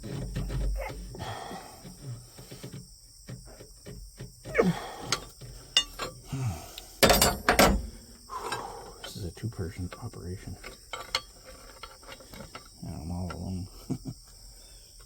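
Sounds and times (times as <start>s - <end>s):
clicks and scrapes: 0.0s - 6.2s, 10.5s - 13.4s
man grunting with effort: 4.5s - 5.2s.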